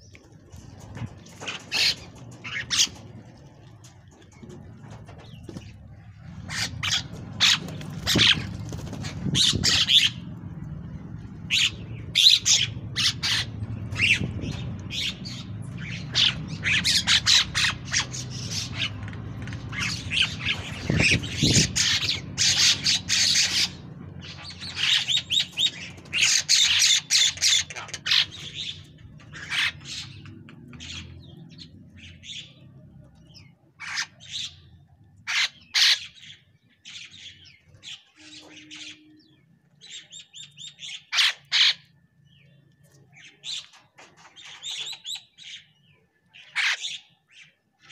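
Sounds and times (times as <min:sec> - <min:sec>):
mynas squawking and chattering: 0:01.2 - 0:10.4, 0:11.4 - 0:32.6.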